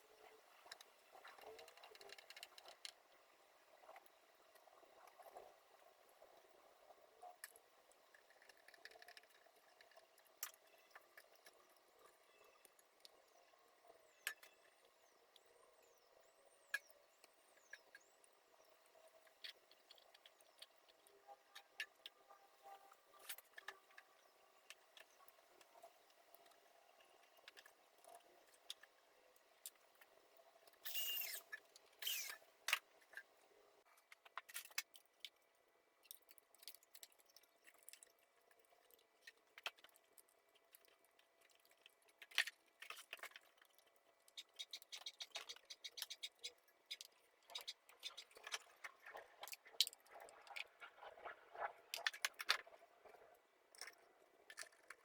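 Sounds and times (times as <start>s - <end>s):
parts scraping: 30.8s - 32.4s.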